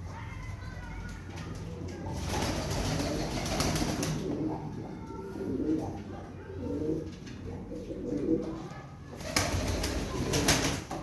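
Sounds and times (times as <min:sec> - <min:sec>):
pigeons cooing: 0:02.0 - 0:10.7.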